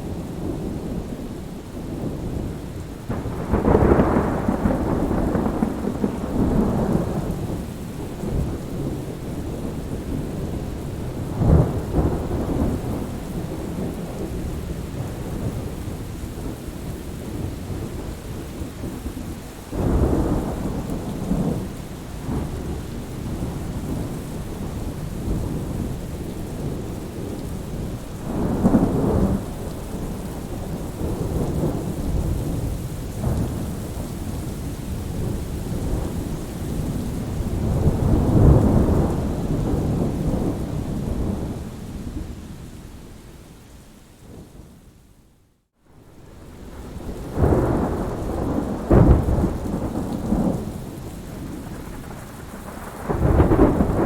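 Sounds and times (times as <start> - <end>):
rolling thunder: 0.0 - 19.1, 19.8 - 42.4, 45.9 - 54.0
steady rain: 0.0 - 54.0.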